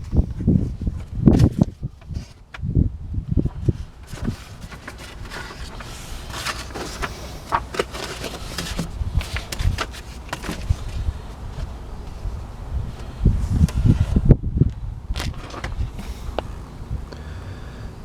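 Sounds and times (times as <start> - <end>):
paper and packaging rustling: 3.4 - 12.4, 15.2 - 16.2.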